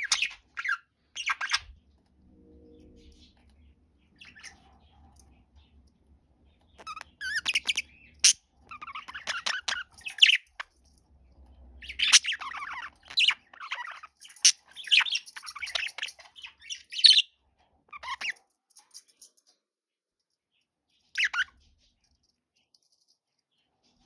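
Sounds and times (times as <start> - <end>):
budgerigars chattering: 6.8 - 10.4, 11.8 - 17.2.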